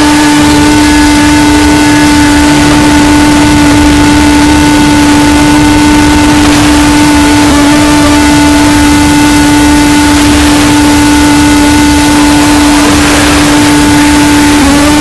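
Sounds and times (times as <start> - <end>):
distorted steady tone: 0.0 - 15.0.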